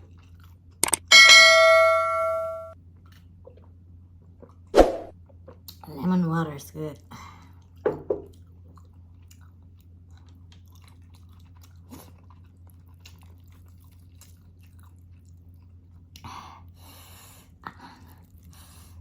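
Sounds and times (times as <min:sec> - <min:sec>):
person chewing food: 0:00.0 - 0:01.0, 0:07.4 - 0:19.0
low steady hum: 0:00.0 - 0:19.0.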